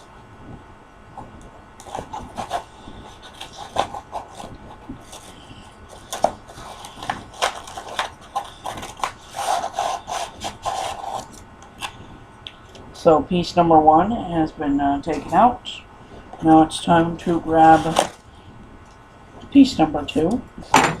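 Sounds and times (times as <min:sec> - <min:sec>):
styrofoam and cardboard scraping: 0:01.8 - 0:11.4, 0:17.3 - 0:18.2.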